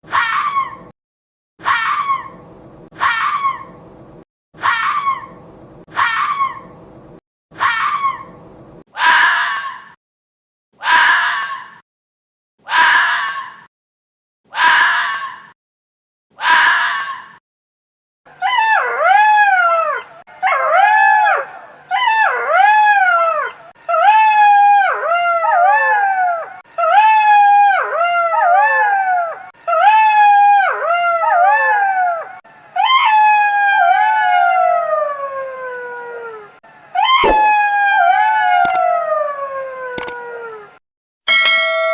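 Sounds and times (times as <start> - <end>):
sharp clicks: 38.6 - 38.8.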